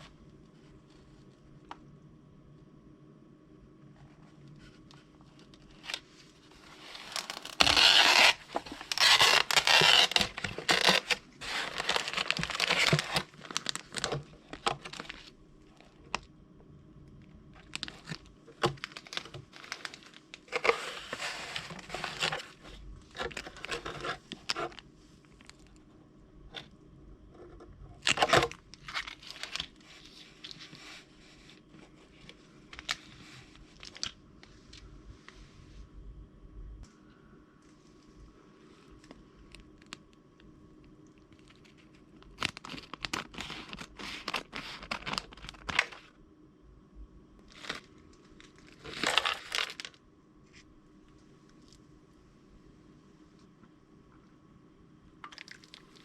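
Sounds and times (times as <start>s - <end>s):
plastic packaging tearing and crinkling: 5.4s - 16.3s, 17.6s - 24.8s, 28.0s - 30.8s, 32.2s - 34.2s, 41.3s - 46.1s, 47.5s - 50.0s.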